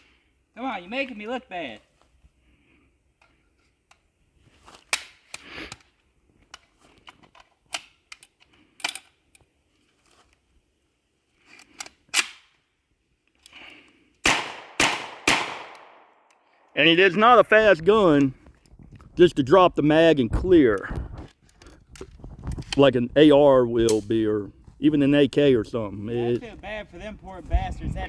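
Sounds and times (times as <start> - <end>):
gun bolt metallic clicks: 6.5 - 9.5, 11.5 - 12.6.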